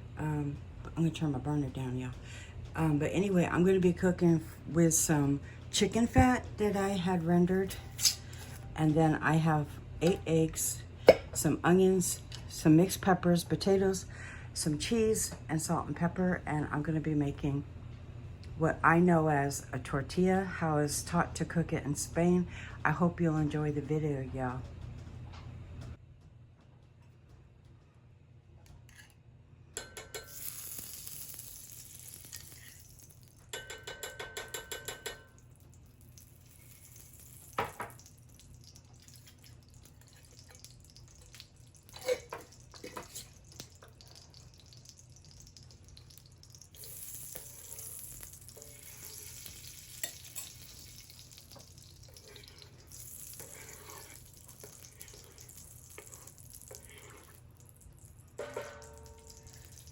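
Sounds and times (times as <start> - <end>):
food sizzling in a frying pan: 30.2 - 33.6, 35.6 - 59.9.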